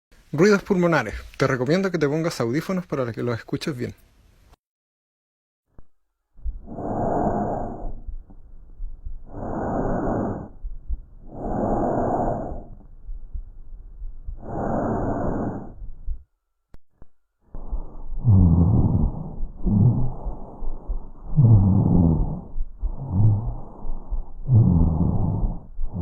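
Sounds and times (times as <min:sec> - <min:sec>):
lung breath sounds through stethoscope: 0:06.4 - 0:16.3, 0:17.5 - 0:26.0.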